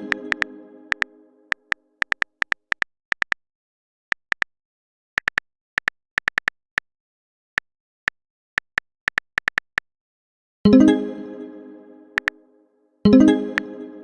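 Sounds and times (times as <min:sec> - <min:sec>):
phone keyboard tap clicks: 0:00.3 - 0:03.4.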